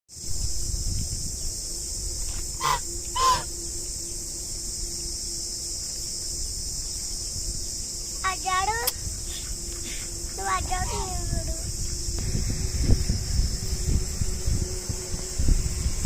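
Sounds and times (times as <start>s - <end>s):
steady high hiss: 0.1s - 16.0s
duck quacking: 2.6s - 3.4s, 10.8s - 11.2s.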